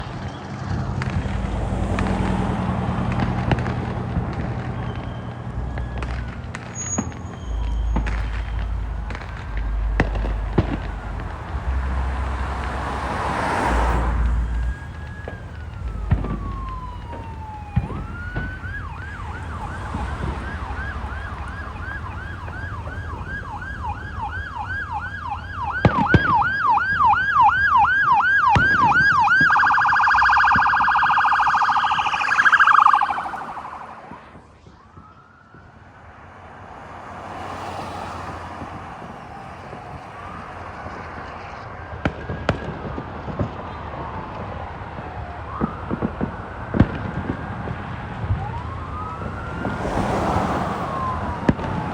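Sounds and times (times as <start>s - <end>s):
ambulance siren: 0.0s - 51.9s
sharp pops: 1.0s - 34.2s.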